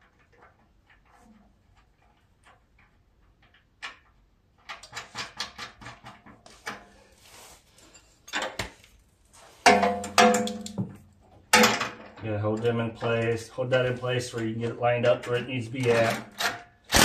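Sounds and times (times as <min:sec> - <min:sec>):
metal clank ringing: 0:09.7 - 0:10.7.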